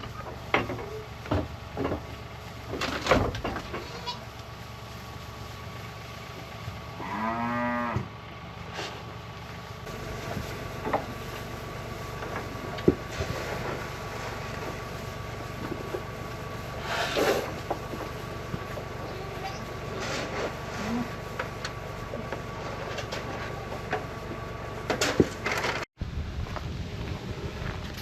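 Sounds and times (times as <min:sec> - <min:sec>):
steady low hum: 0:00.0 - 0:28.0
cow mooing: 0:07.0 - 0:08.1.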